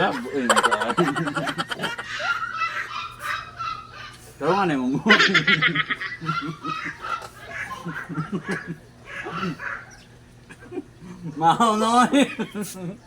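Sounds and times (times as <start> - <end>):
person laughing: 0.0 - 2.2, 4.9 - 7.0, 7.8 - 9.6, 10.5 - 13.0.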